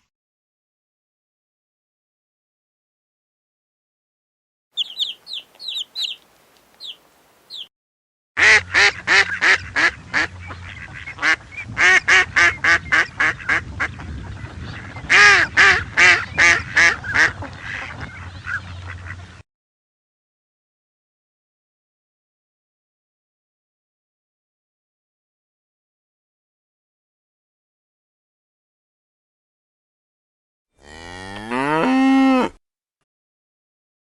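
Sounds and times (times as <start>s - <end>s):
harsh repeated bird calls: 4.8s - 7.7s
high bird chirps: 4.8s - 7.7s.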